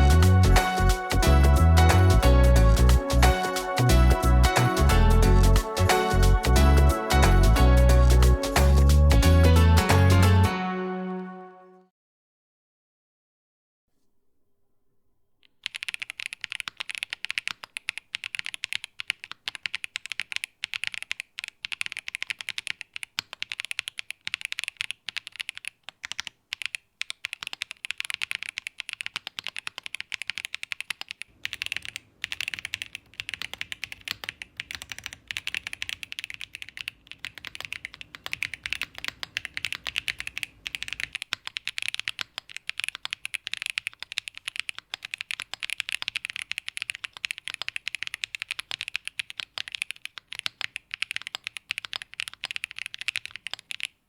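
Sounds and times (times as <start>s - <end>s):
mechanical keyboard typing: 15.6s - 54.0s.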